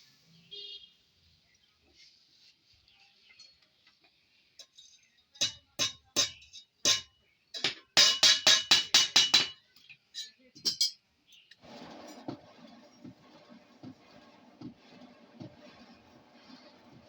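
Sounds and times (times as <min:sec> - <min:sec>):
hammer striking metal on anvil: 0:05.4 - 0:09.6.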